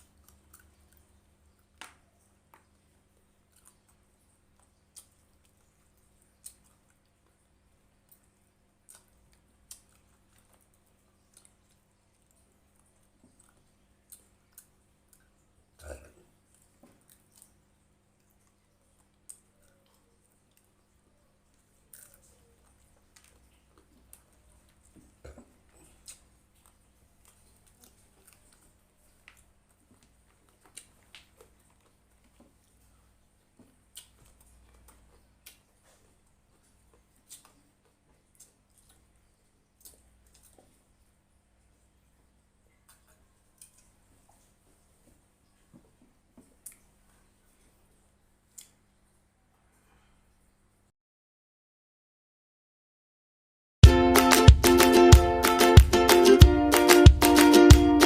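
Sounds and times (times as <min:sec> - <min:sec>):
person eating clicks and smacks: 0:00.0 - 0:07.4, 0:08.0 - 0:17.6, 0:21.5 - 0:32.5, 0:33.6 - 0:39.1, 0:39.8 - 0:40.7, 0:46.5 - 0:46.9, 0:48.5 - 0:48.8
person chewing: 0:00.0 - 0:17.6, 0:21.5 - 0:39.1.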